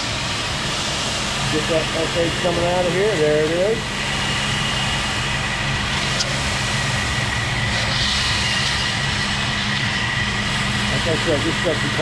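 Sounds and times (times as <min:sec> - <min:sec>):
spray hiss: 0:00.0 - 0:05.3
pressure washer engine running: 0:00.0 - 0:12.0.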